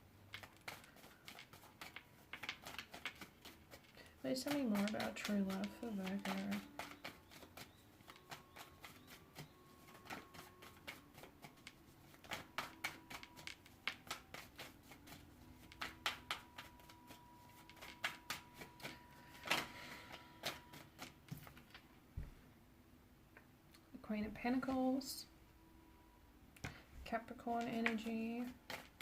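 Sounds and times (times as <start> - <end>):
cards being shuffled: 0.3 - 21.8, 27.6 - 29.0.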